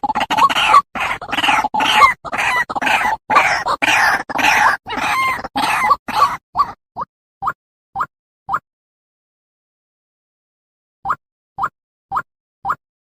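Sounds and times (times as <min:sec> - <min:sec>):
bird giving harsh croaking calls: 0:00.0 - 0:06.8.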